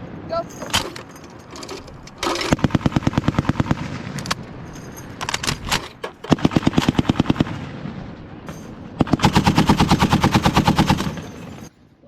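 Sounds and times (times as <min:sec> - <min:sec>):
machine guns firing in bursts: 0:02.2 - 0:11.7.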